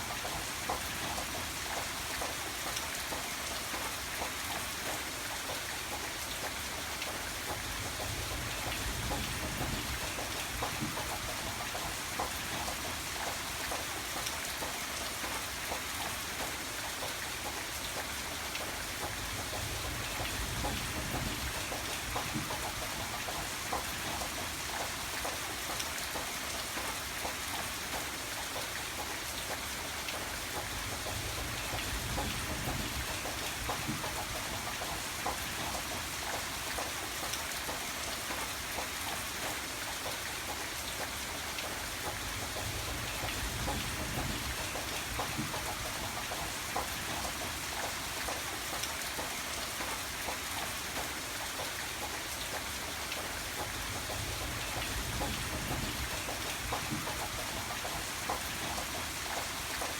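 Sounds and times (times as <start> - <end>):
rain drops tapping on surface: 0.0 - 59.9.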